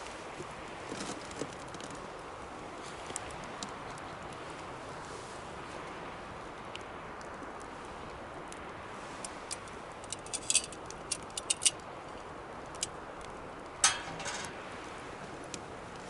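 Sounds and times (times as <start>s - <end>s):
fire crackles and pops: 0.0s - 16.0s
wood fire hissing: 0.0s - 16.0s.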